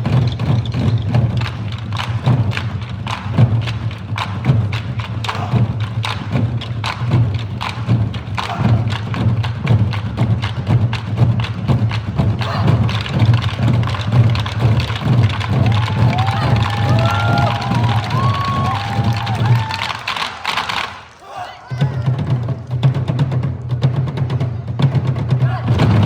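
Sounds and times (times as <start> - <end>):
drum ensemble playing: 0.0 - 21.1, 21.7 - 26.0
deep drum boom: 21.8 - 26.0.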